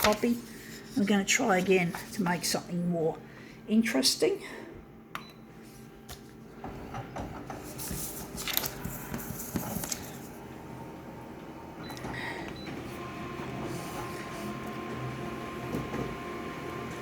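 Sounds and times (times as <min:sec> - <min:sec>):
photocopier running: 0:05.7 - 0:17.0
photocopier clicks and rustles: 0:07.5 - 0:10.3.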